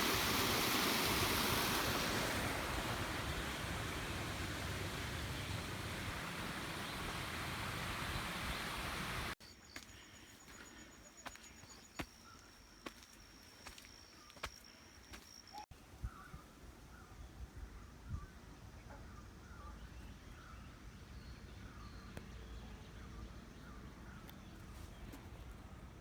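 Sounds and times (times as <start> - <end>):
waterfall rushing: 0.0 - 9.4.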